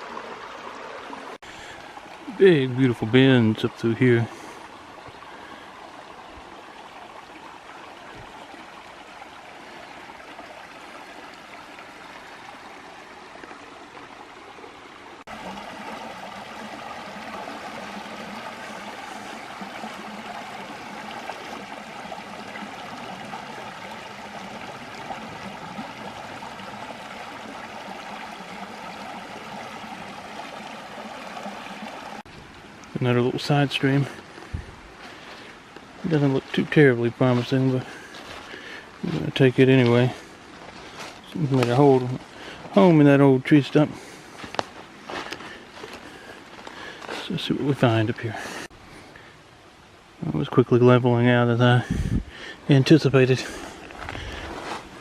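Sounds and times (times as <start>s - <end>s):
creek water over cascades: 0.0s - 55.0s.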